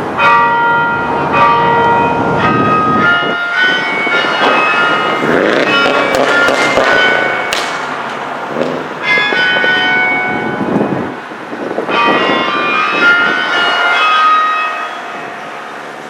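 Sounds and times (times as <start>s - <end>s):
tower bells ringing: 0.0s - 16.0s.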